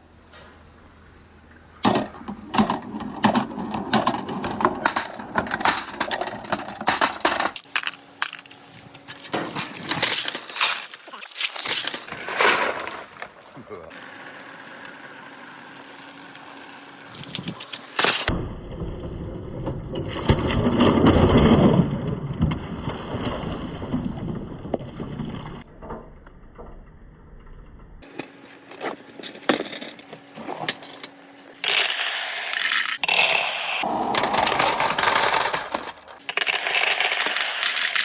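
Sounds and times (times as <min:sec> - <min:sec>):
glass marbles rolling: 0:07.6 - 0:18.3, 0:31.6 - 0:38.0.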